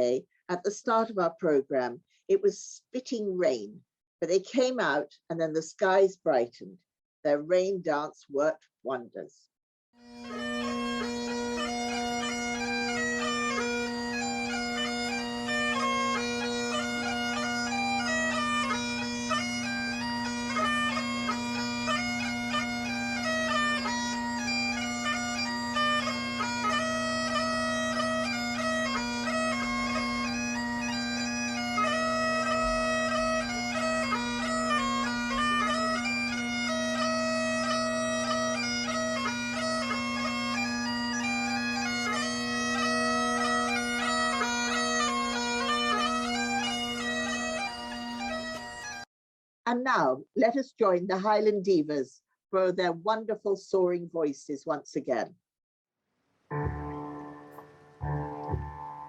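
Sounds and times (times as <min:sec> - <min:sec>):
bagpipe dance tune: 0:10.1 - 0:49.0, 0:56.5 - 0:59.0.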